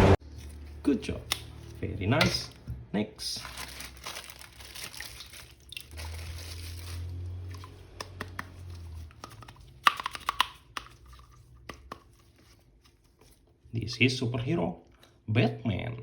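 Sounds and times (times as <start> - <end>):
packaging crinkling and tearing: 3.3 - 11.4
sharp clicks and taps: 9.2 - 11.0.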